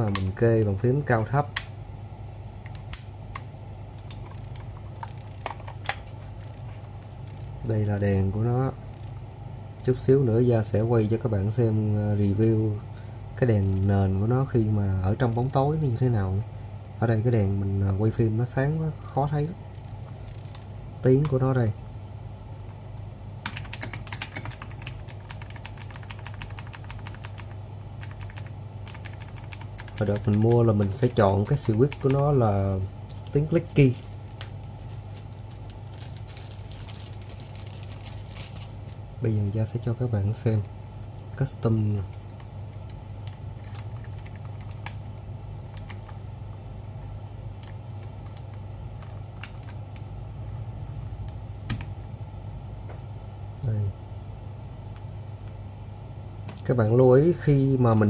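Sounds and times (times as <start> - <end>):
steady low hum: 0.0 - 58.0
mechanical keyboard clicks: 23.4 - 32.2.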